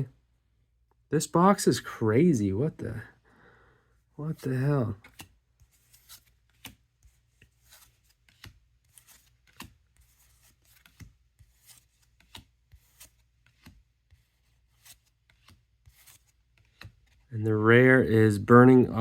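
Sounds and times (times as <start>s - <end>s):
trading cards clicking and rubbing: 4.3s - 17.3s.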